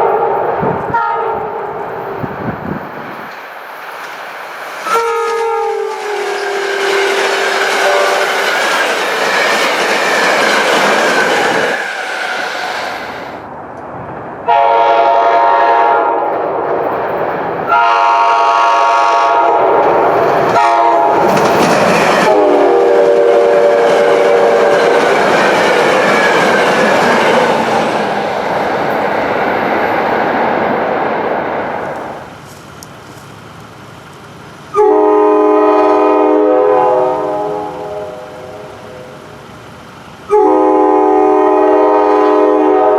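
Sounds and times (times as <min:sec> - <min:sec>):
train air horn blasts: 0:00.0 - 0:01.6, 0:04.8 - 0:08.6, 0:14.5 - 0:16.3, 0:17.7 - 0:19.8, 0:20.6 - 0:21.3, 0:22.2 - 0:25.0, 0:34.7 - 0:39.4, 0:40.3 - 0:42.9
train rumble and wheel clatter: 0:00.0 - 0:42.9.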